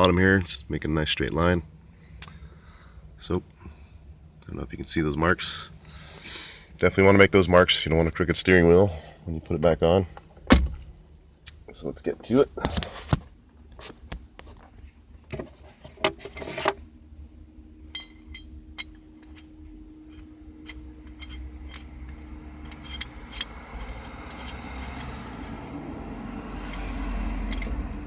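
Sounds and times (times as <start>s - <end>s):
faint steady hum: 0.0s - 28.0s
metal hand tools clinking: 17.9s - 25.6s, 26.7s - 27.8s.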